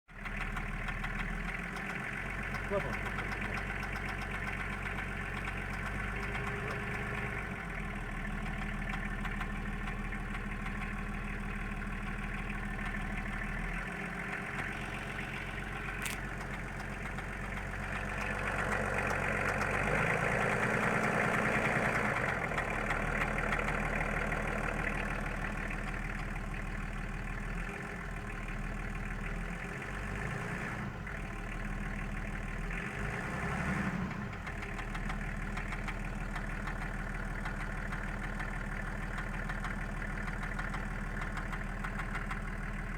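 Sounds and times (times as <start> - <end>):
diesel engine idling: 0.1 - 42.9
engine clicking noise: 0.1 - 42.9.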